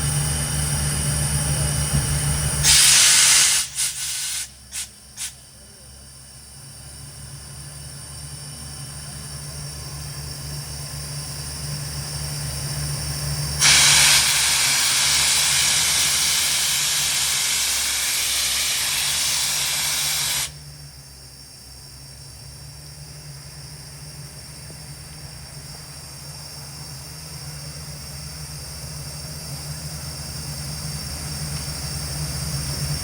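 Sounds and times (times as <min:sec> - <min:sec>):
rush of hissing air: 0:02.6 - 0:05.4, 0:13.6 - 0:20.8
drilling rig droning: 0:13.5 - 0:20.7.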